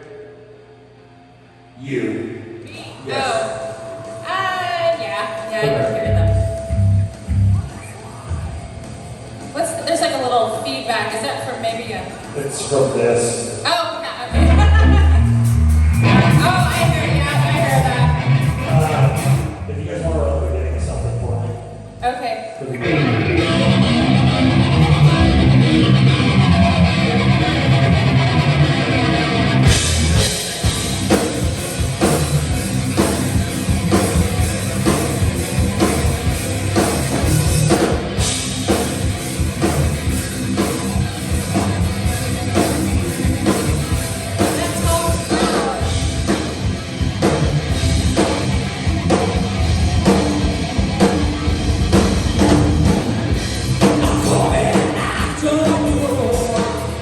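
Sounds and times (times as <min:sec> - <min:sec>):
electric guitar chords: 0:03.1 - 0:09.5, 0:14.3 - 0:19.8, 0:20.4 - 0:57.0
drum kit beat: 0:14.3 - 0:19.5, 0:29.6 - 0:57.0.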